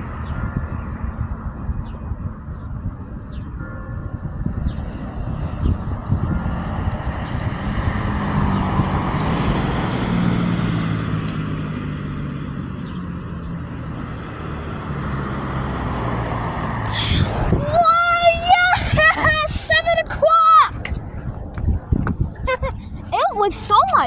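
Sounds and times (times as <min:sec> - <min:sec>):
vehicle engine hum: 0:04.8 - 0:24.0.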